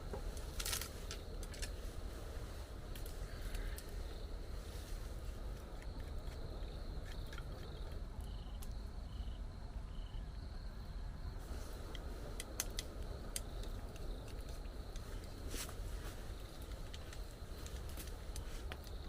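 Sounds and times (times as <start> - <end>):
sharp drip-like ticks: 5.5 - 8.9, 11.8 - 15.4.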